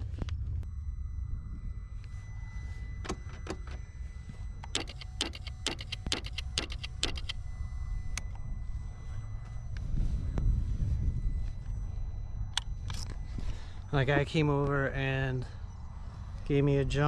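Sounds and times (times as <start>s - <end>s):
low rumble: 0.0s - 4.8s, 7.3s - 17.0s
starter relay clicking: 4.6s - 7.4s.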